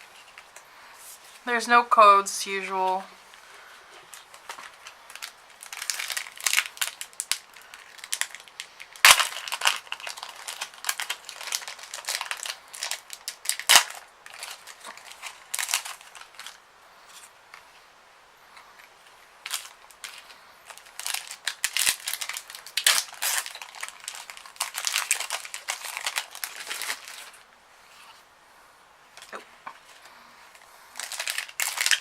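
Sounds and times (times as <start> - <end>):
foil wrappers crinkling and tearing: 3.4 - 17.3, 19.4 - 27.5, 29.2 - 32.0.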